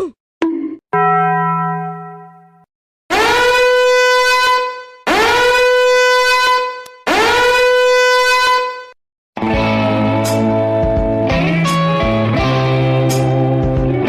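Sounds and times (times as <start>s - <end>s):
long horn blasts: 3.1s - 8.9s.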